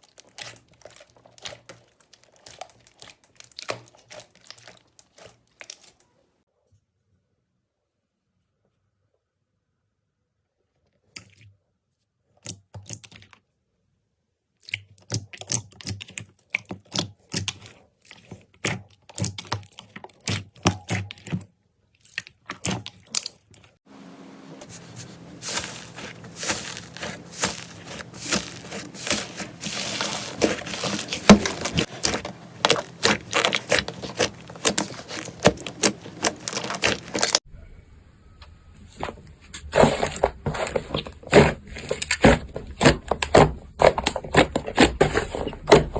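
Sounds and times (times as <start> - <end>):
slime crackling and popping: 0.0 - 6.0, 25.0 - 37.4.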